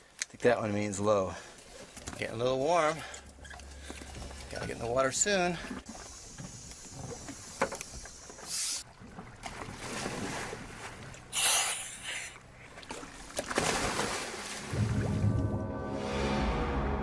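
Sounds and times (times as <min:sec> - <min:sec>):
water splashing and rushing: 0:08.8 - 0:16.6
music: 0:14.7 - 0:17.0.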